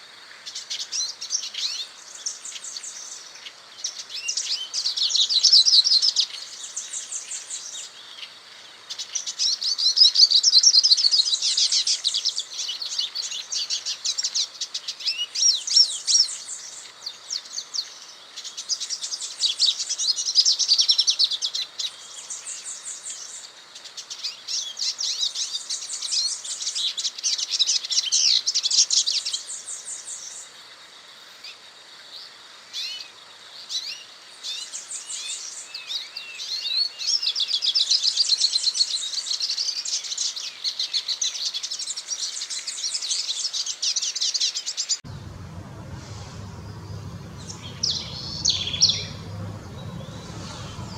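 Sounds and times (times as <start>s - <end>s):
songbird twittering with trills: 45.0s - 50.9s.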